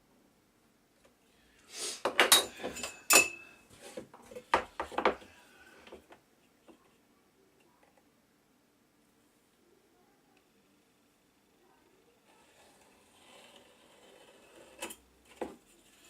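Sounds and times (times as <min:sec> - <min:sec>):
workshop parts knocking and clattering: 0:02.1 - 0:03.4.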